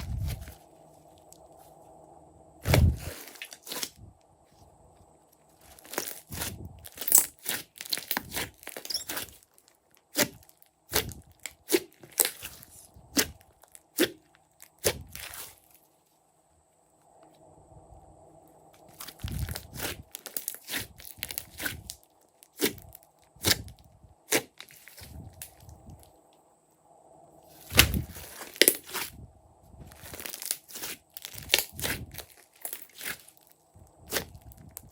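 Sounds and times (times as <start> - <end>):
slime popping and crackling: 5.8 - 9.3, 30.0 - 33.3.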